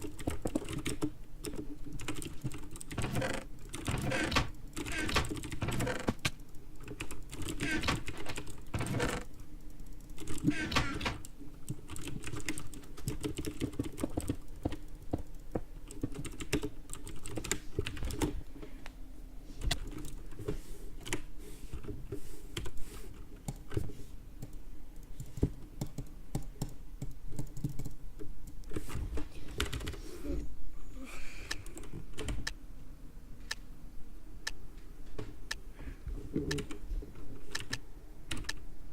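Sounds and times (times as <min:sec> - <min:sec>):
keyboard typing clicks: 0:00.0 - 0:18.3, 0:24.4 - 0:28.8, 0:31.5 - 0:32.6, 0:36.4 - 0:36.8, 0:37.5 - 0:38.7.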